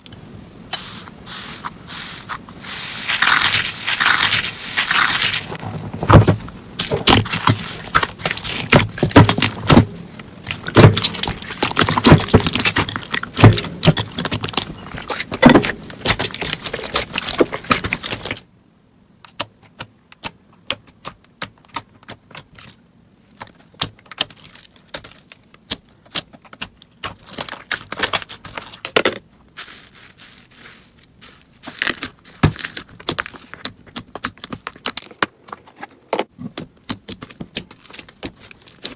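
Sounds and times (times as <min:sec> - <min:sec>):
slime crackling and popping: 0:02.8 - 0:05.6.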